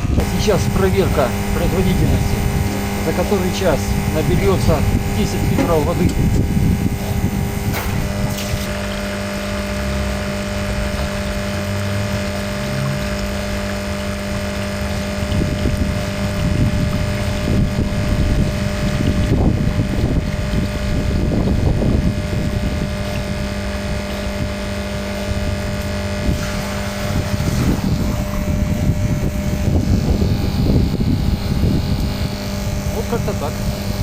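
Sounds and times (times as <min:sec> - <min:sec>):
water pump humming: 0:00.0 - 0:34.0
water rushing and splashing: 0:25.8 - 0:29.7.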